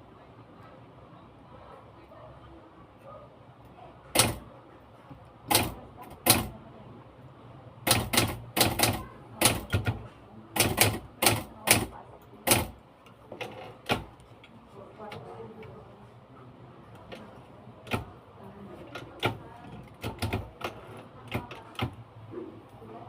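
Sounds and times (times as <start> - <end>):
typewriter keys clacking: 4.1 - 4.4, 5.5 - 6.5, 7.9 - 10.0, 10.6 - 12.8, 18.9 - 22.0.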